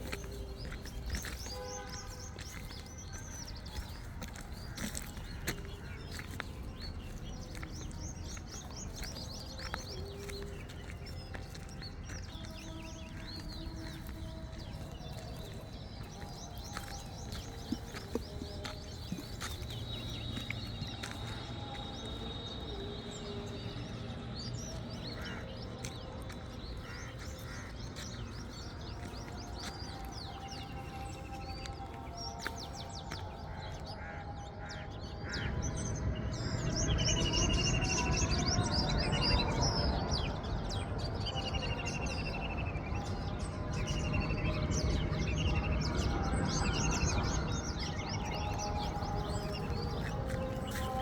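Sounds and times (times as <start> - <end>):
small birds chirping: 0.0 - 51.0.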